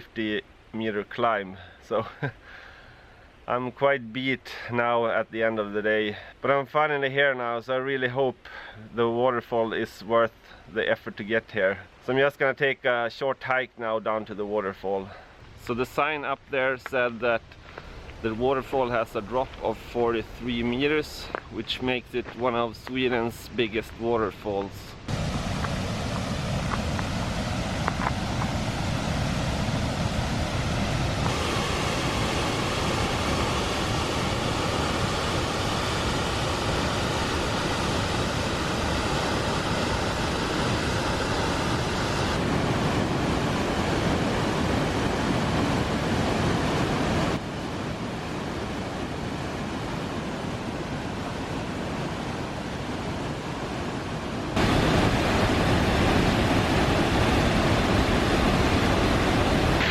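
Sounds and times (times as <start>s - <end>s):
waterfall rushing: 25.0s - 47.7s, 48.7s - 59.9s.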